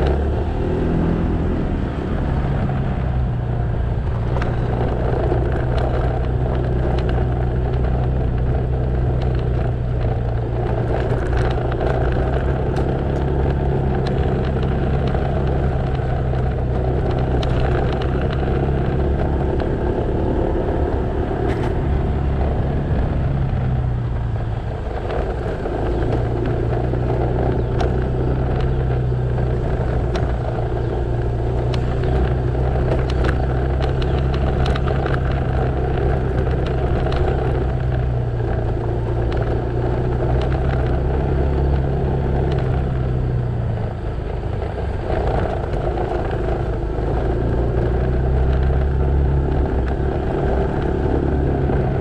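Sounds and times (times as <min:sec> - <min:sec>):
motorcycle engine running: 0:00.0 - 0:52.0
road and wind noise: 0:00.0 - 0:52.0.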